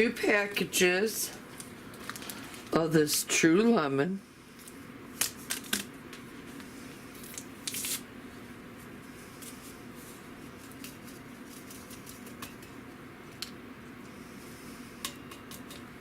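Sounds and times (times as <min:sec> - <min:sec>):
faint steady hum: 0:00.0 - 0:16.0
paper packets rustling: 0:01.9 - 0:02.8.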